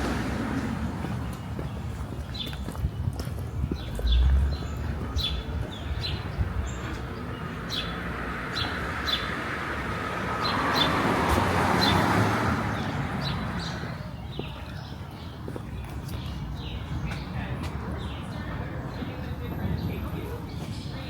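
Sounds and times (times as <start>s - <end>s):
car passing: 0.0s - 2.1s, 3.8s - 14.3s.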